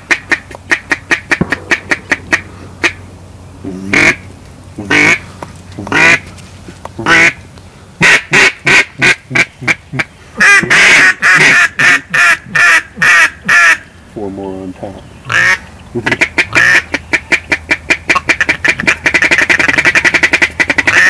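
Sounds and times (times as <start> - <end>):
duck quacking: 3.6 - 6.2, 7.0 - 7.4, 8.0 - 13.8, 15.3 - 21.0.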